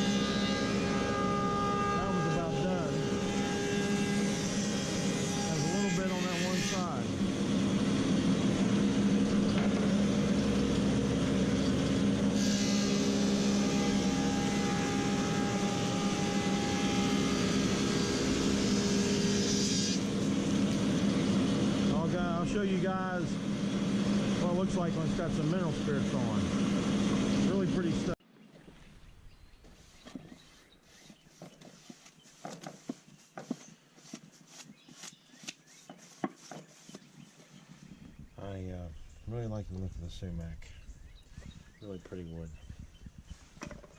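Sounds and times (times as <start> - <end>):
planer cutting wood: 0.0 - 28.2
planer motor hum: 0.0 - 28.2
brushing scuffs: 29.6 - 38.0.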